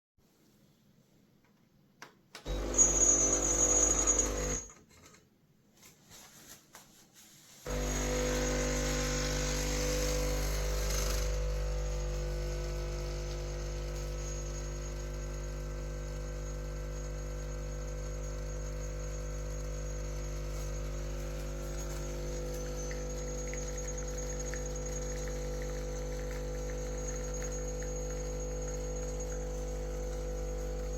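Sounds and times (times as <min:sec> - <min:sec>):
espresso machine pump humming: 0:02.5 - 0:04.7, 0:07.7 - 0:30.9.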